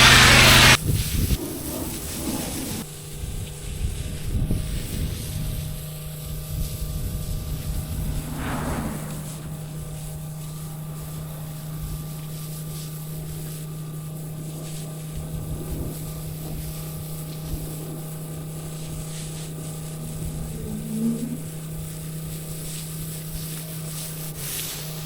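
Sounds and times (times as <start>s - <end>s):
pressure washer engine running: 0.0s - 0.8s.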